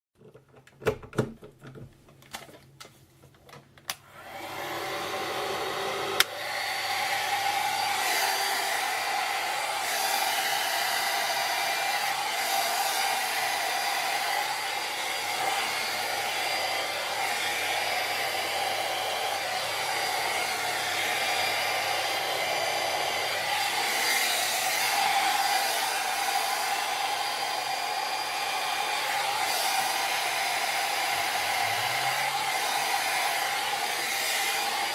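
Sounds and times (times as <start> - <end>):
hair dryer fan whirring: 3.9 - 34.9.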